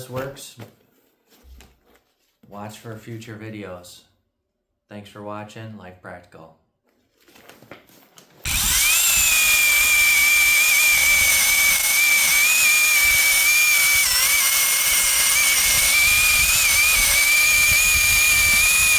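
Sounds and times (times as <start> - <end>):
chainsaw motor whining: 8.4 - 18.9.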